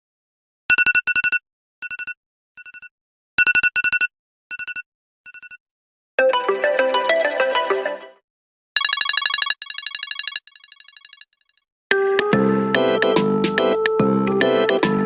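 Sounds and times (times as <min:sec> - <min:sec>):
telephone trilling ring: 0:08.8 - 0:11.3.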